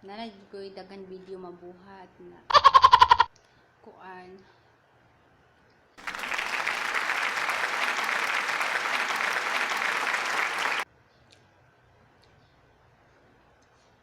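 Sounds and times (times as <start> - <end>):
dense applause: 6.0 - 10.8.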